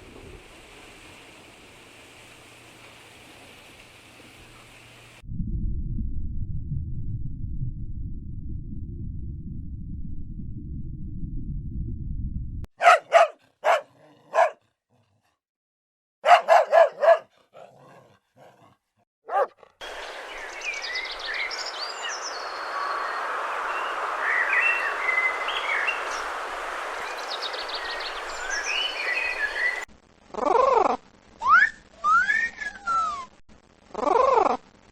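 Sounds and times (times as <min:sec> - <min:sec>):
low rumble: 0:05.2 - 0:12.7
dog barking: 0:12.8 - 0:14.7, 0:16.2 - 0:18.6, 0:19.2 - 0:19.8
high chirping calls: 0:19.8 - 0:29.9.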